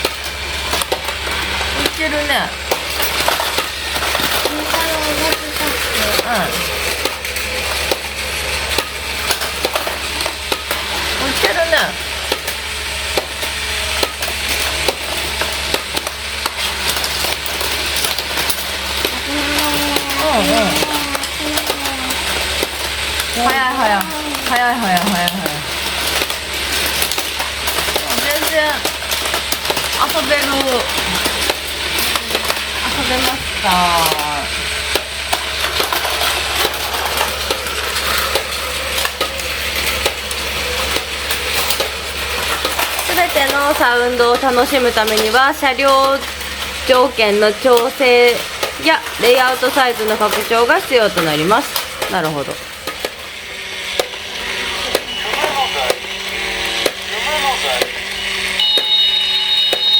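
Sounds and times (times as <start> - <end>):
toy train motors whirring: 0.0 - 59.9.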